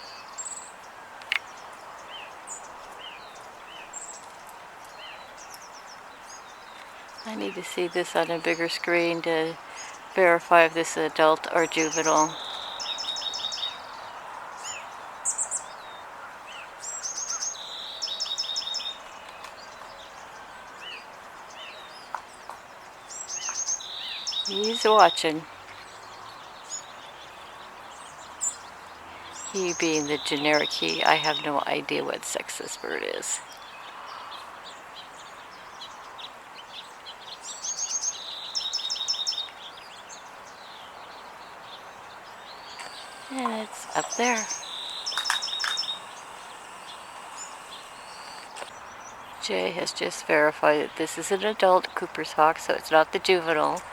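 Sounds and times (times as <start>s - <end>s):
outdoor background hiss: 0.0s - 53.9s
songbird singing: 0.0s - 53.9s
scattered bird chirps: 41.7s - 49.4s
steady background hum: 42.3s - 53.9s.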